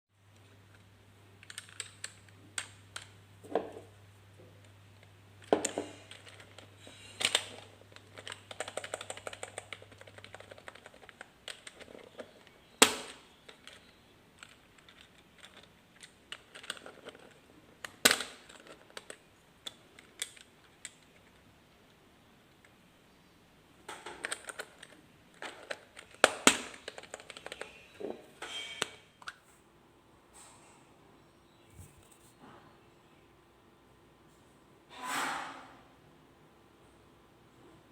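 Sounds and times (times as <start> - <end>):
computer keyboard typing: 1.4 - 3.1, 6.1 - 12.3, 14.4 - 17.3.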